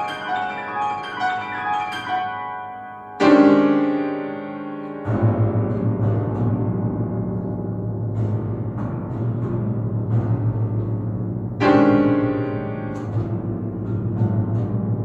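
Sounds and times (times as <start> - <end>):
piano chord ringing: 0.0 - 6.6, 11.6 - 13.9
fast low piano notes: 0.0 - 15.0.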